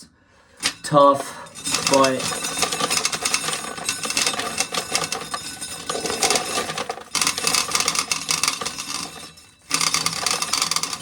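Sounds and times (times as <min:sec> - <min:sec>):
corn kernels clicking and rattling: 0:00.6 - 0:11.0.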